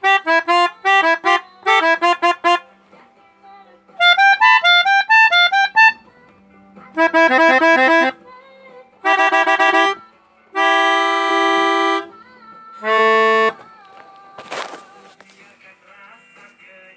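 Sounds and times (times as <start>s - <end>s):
musical multi-tone bus horn: 0.0s - 2.8s, 4.0s - 6.1s, 6.9s - 8.3s, 9.0s - 12.2s, 12.8s - 13.7s.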